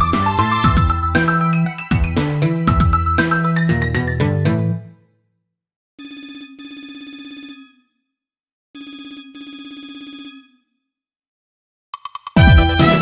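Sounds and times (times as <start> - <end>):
phone ringtone pulsing ring: 6.0 - 7.9, 8.8 - 10.7.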